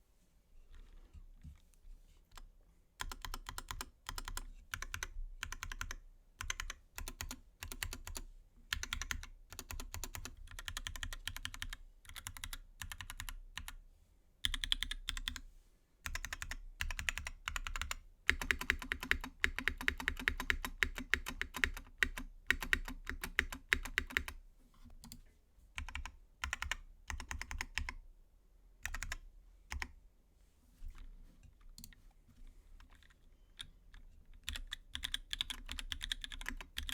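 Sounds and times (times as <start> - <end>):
mechanical keyboard typing: 2.4 - 13.8, 14.4 - 15.4, 16.0 - 24.4, 25.8 - 28.0, 28.8 - 29.9, 32.8 - 36.9.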